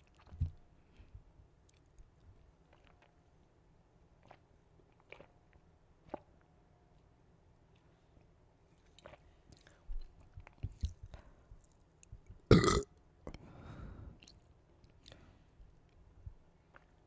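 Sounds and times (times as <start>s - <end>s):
low gulping sounds: 12.5s - 12.8s
person burping: 12.5s - 12.8s
soft breathy exhale: 13.4s - 14.2s.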